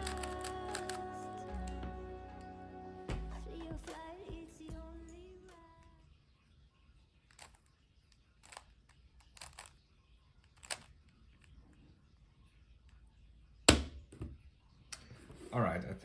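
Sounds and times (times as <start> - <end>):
background music: 0.0 - 5.8.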